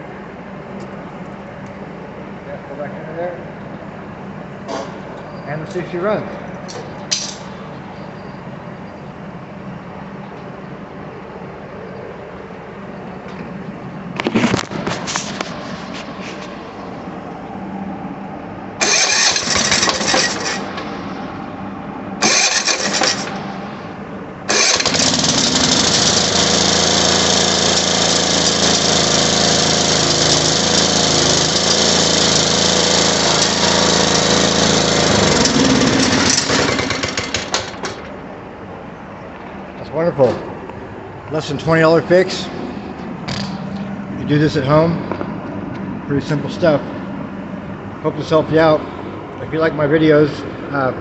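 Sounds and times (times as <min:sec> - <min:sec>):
lawn mower engine starting and running: 0:03.6 - 0:08.4, 0:09.4 - 0:51.0.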